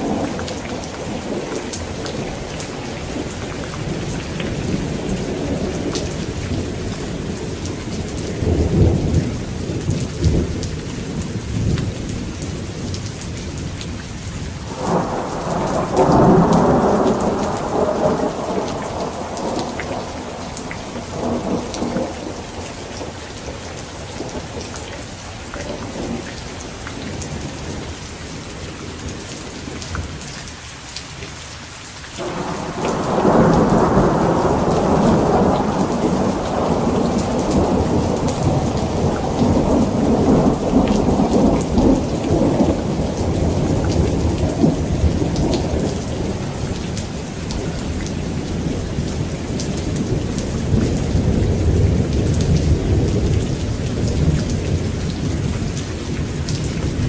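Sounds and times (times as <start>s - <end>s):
steady rain: 0.0s - 57.0s
rolling thunder: 14.6s - 24.8s, 32.2s - 57.0s.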